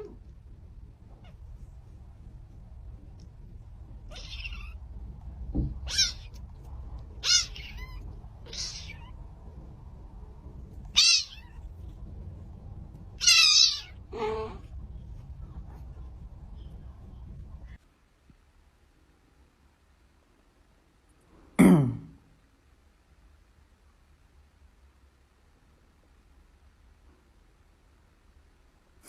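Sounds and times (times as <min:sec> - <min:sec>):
cat meowing: 0:03.9 - 0:04.9, 0:05.6 - 0:09.2, 0:10.9 - 0:11.7, 0:13.2 - 0:14.8
low thump: 0:05.4 - 0:05.8.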